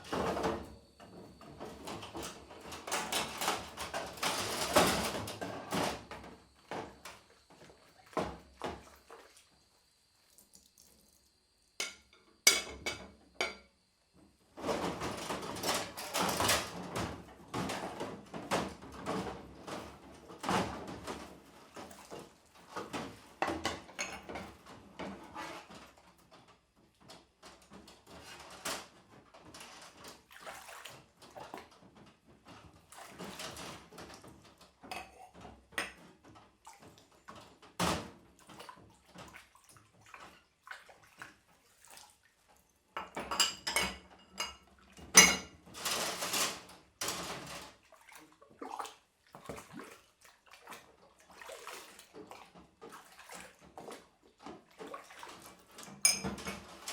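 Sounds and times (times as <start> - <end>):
dishes clinking in a sink: 11.8 - 13.7, 14.6 - 26.0, 32.6 - 39.4, 43.0 - 47.7, 54.8 - 56.9.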